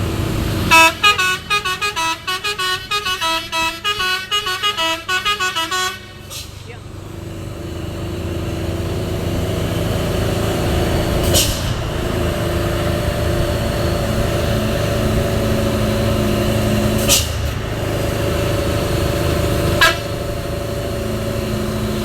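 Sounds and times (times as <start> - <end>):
truck diesel engine droning: 0.0 - 22.0
air brake hiss: 6.2 - 6.7, 11.2 - 11.8.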